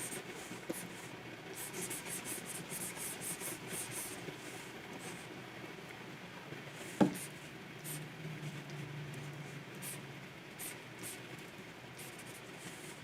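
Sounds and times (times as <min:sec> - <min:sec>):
stylus scratching on pen tablet: 0:01.6 - 0:04.2.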